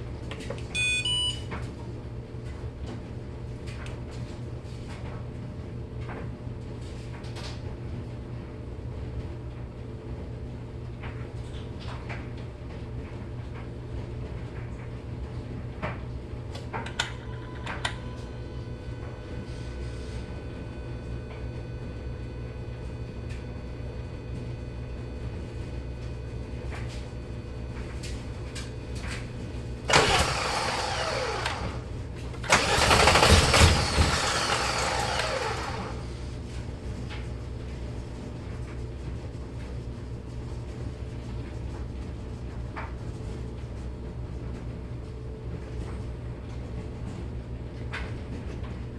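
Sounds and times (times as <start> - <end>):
engine cranking by starter: 29.9 - 36.1.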